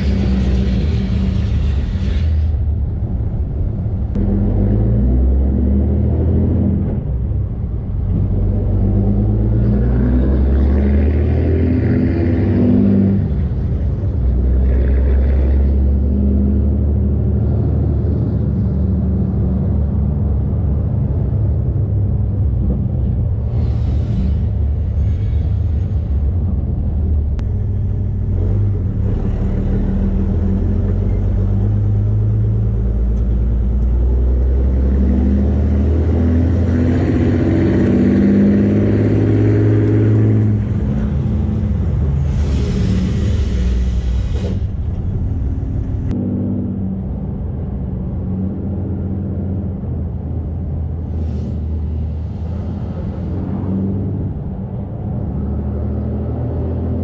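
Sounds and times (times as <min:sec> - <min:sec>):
diesel truck engine droning: 0:00.0 - 0:57.0.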